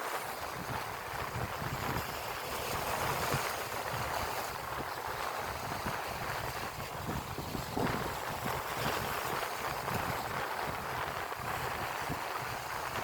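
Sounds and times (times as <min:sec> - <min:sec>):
sea water washing: 0:00.0 - 0:13.0
wind noise on microphone: 0:00.0 - 0:13.0.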